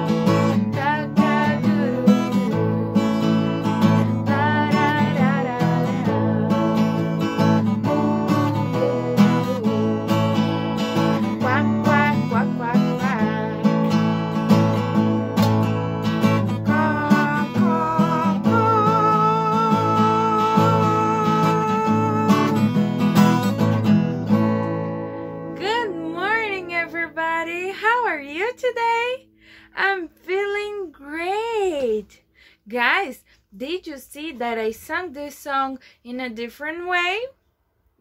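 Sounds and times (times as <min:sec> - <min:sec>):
person singing: 0:00.0 - 0:24.6, 0:25.4 - 0:28.2
strummed acoustic guitar: 0:00.0 - 0:28.7.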